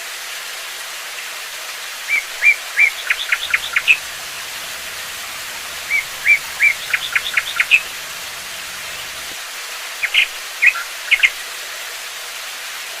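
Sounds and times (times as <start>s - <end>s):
falling water hiss: 2.0s - 9.4s
small songbirds chirping: 2.8s - 9.3s.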